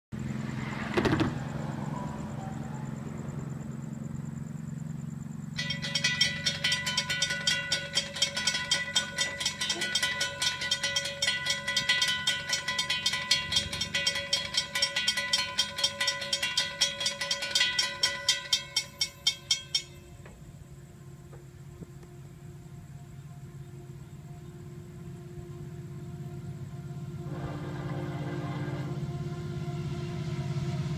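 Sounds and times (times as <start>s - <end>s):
low engine rumble: 0.1s - 30.9s
railroad crossing bell ringing: 5.5s - 20.5s.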